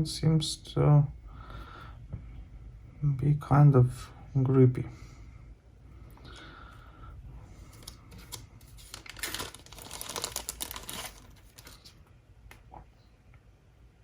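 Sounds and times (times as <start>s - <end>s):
crinkling and rustling handling noise: 7.4s - 12.9s.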